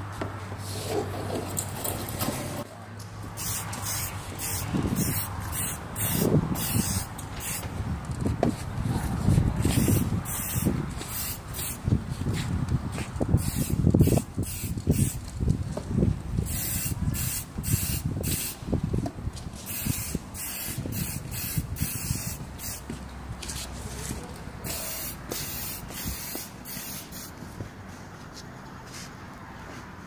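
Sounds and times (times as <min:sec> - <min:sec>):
spray-paint can hissing: 0:03.4 - 0:07.6, 0:09.6 - 0:11.8, 0:13.4 - 0:15.3, 0:16.4 - 0:18.6, 0:19.6 - 0:22.8, 0:24.6 - 0:27.3
wind buffeting microphone: 0:04.3 - 0:23.4.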